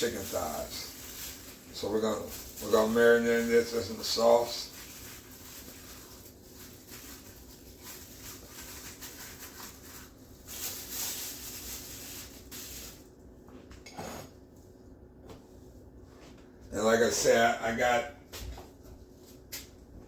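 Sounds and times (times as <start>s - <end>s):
chicken rustling in a bowl: 0.0s - 13.2s.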